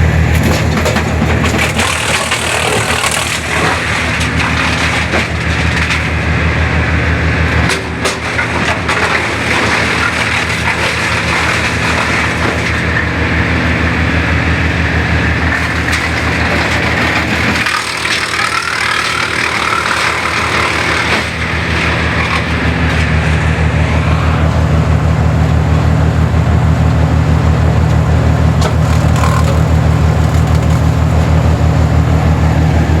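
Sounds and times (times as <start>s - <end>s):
wood chipper engine pulsing: 0.0s - 33.0s
wood being chipped: 0.3s - 6.1s, 15.4s - 23.3s, 28.6s - 31.4s.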